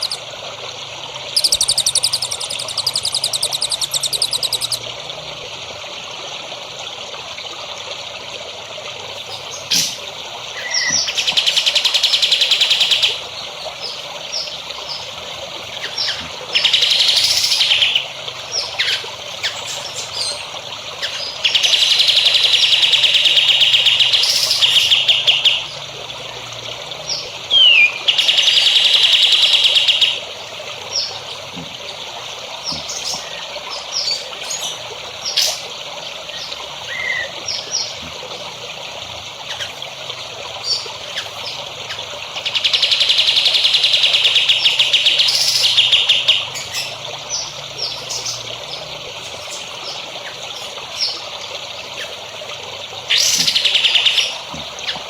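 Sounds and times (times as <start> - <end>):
bird chirps: 0.0 - 0.2, 1.3 - 4.8, 27.1 - 30.2
songbird buzzy trills: 0.0 - 0.5, 1.1 - 5.0, 9.0 - 55.0
water trickling: 0.0 - 55.0.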